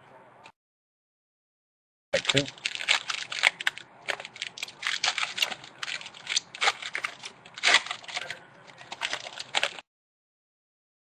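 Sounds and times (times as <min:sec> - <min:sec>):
foil wrapper crinkling: 0:02.2 - 0:09.8.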